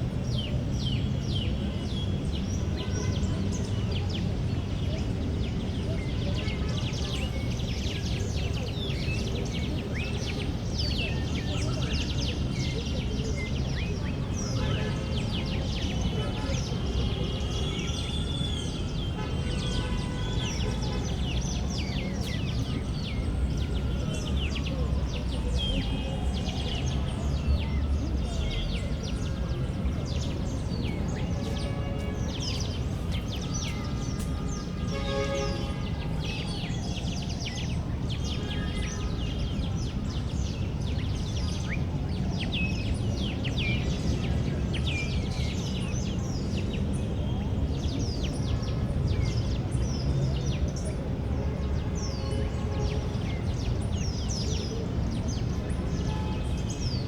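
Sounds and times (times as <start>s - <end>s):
small birds chirping: 20.0s - 48.6s.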